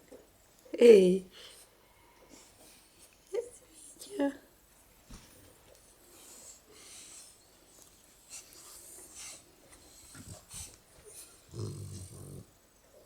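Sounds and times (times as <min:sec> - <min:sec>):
puppies breathing noisily: 0:06.0 - 0:12.5
low snore: 0:11.5 - 0:12.5.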